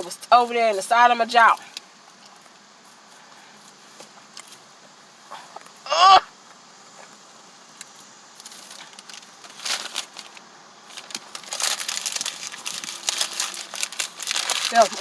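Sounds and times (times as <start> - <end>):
close chewing: 7.8 - 15.0.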